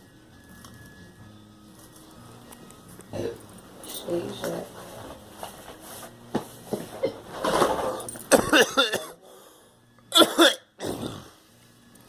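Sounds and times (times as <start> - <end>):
person coughing: 3.1 - 3.4, 8.3 - 9.2, 10.1 - 11.3.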